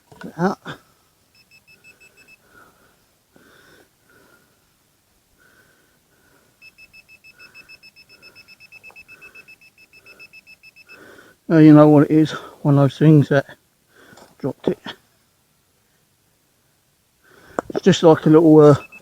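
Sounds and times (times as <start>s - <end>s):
soft breathing: 0.7s - 11.5s, 13.8s - 15.2s, 15.8s - 17.8s
metal detector pinpointer beeping: 1.4s - 2.4s, 6.6s - 11.0s, 18.3s - 19.0s.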